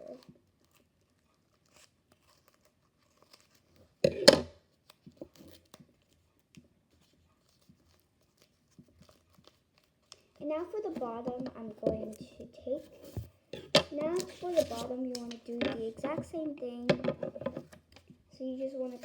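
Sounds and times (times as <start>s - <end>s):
paper rustling: 0.0s - 4.0s, 4.7s - 16.4s
scissors cutting paper: 13.6s - 15.6s.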